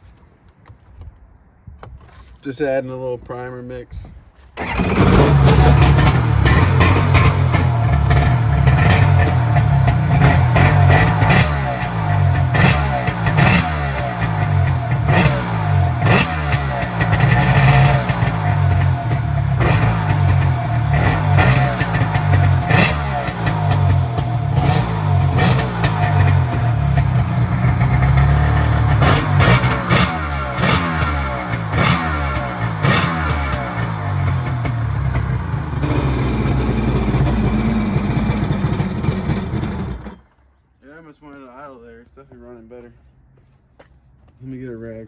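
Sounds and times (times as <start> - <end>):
engine revving: 4.6 - 40.3
sharp engine cracks: 4.6 - 40.5.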